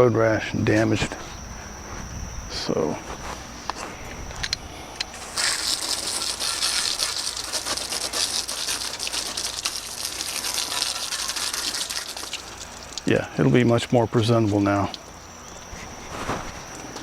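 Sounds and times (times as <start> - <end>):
water spraying on car wheel: 5.2 - 15.0.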